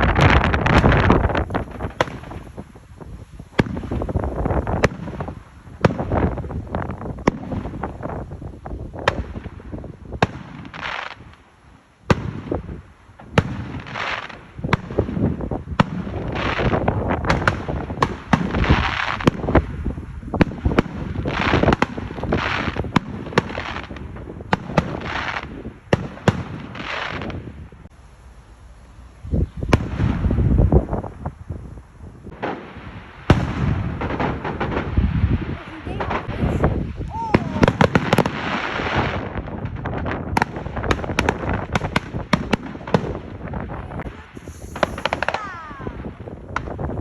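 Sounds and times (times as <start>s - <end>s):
fireworks sharp bangs: 0.0s - 27.9s, 29.5s - 31.2s, 32.3s - 47.0s
fireworks crackling bursts: 0.0s - 47.0s.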